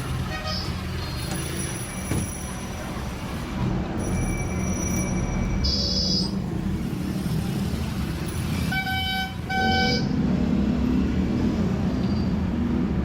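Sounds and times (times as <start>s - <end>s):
street traffic: 0.0s - 13.0s
vehicle horn beeping: 0.3s - 0.8s, 5.6s - 6.4s, 8.6s - 10.1s.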